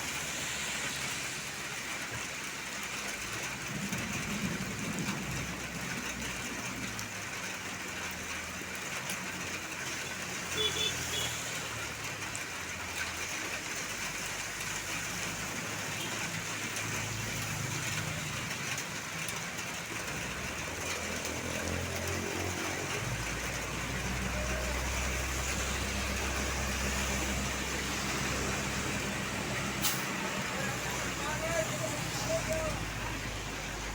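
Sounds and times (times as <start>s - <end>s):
road noise: 0.0s - 33.9s
bus engine running: 19.8s - 33.9s.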